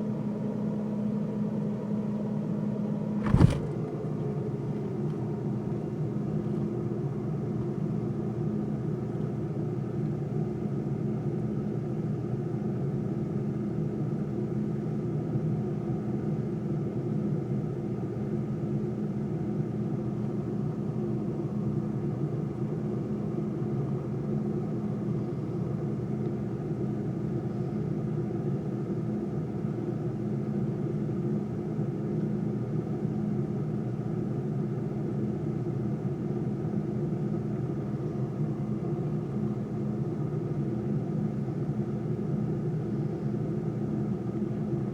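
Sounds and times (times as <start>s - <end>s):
sharp knock: 3.2s - 3.8s
freezer humming: 3.2s - 4.9s.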